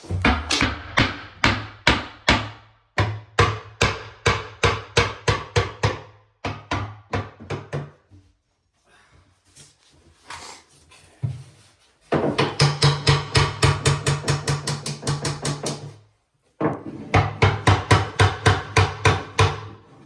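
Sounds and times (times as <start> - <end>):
hammer driving nails into wood: 12.2 - 15.9, 17.2 - 19.8.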